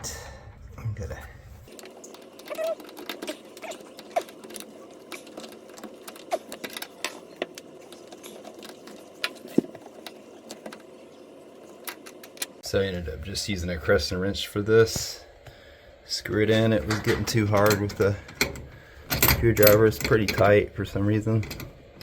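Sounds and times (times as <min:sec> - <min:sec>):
screw squeaking: 0:01.7 - 0:10.8, 0:16.7 - 0:22.0
wrench clicking on metal: 0:17.5 - 0:20.6.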